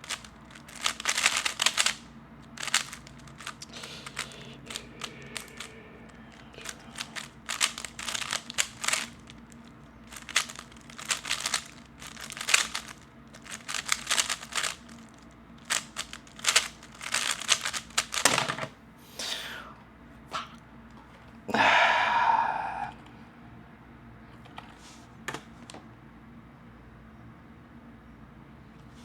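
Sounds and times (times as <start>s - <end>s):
speedcube clicking and rattling: 0.0s - 18.6s.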